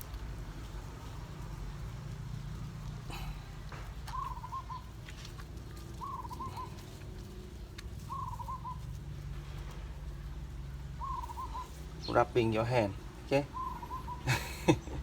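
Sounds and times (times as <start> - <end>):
bird calling: 2.9 - 9.8, 10.7 - 15.0.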